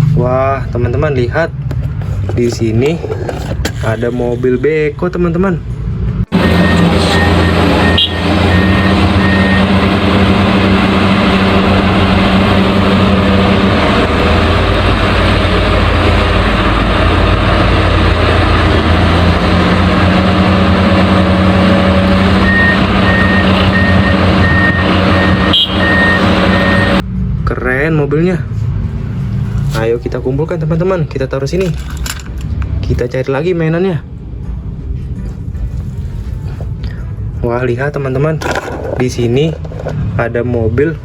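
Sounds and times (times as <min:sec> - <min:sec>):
construction machine engine drone: 0:05.6 - 0:27.6
reversing alarm beeping: 0:06.3 - 0:11.7, 0:22.0 - 0:27.0.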